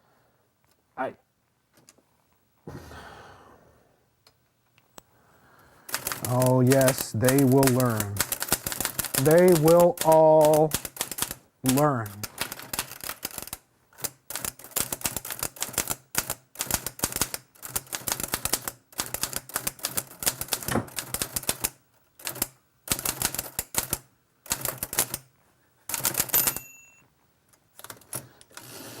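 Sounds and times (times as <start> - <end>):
typewriter keys striking: 5.9 - 25.2, 25.9 - 26.6
typewriter bell ring: 26.0 - 27.0.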